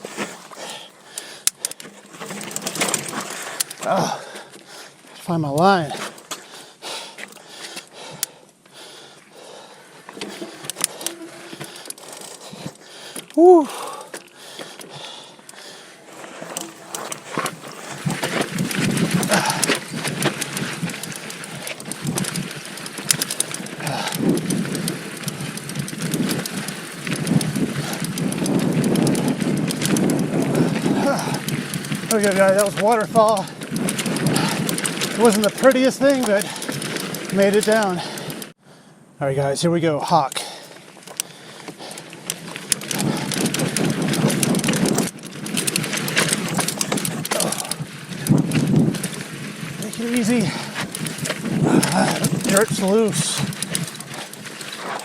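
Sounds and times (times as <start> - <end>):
tyres crunching over dirt and rock: 0.0 - 7.9, 9.2 - 38.6, 39.7 - 55.0
bike clicking and rattling: 0.0 - 38.8, 39.4 - 55.0
sharp clicks: 1.1 - 3.8, 14.0 - 15.7, 16.5 - 38.6.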